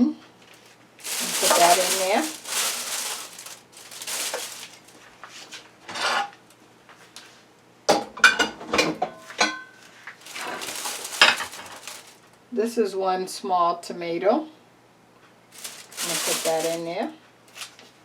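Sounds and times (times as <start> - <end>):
dishes and utensils clinking: 10.3 - 12.0.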